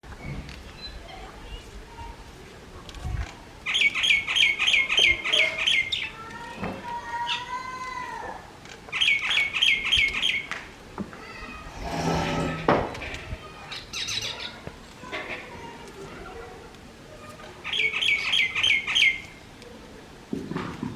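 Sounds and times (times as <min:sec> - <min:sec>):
bird high sharp chirps: 0:03.7 - 0:06.1, 0:09.0 - 0:10.5, 0:17.7 - 0:19.4.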